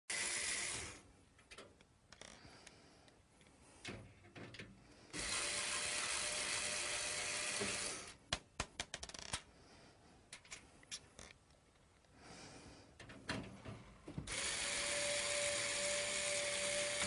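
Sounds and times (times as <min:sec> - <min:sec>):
power screwdriver running: 0:00.1 - 0:01.0, 0:05.2 - 0:08.2, 0:14.3 - 0:17.0.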